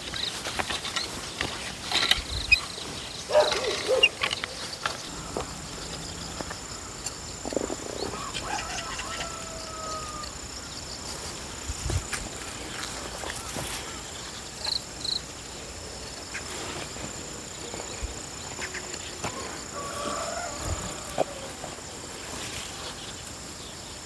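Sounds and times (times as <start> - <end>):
high insect chirring: 0.0 - 16.4.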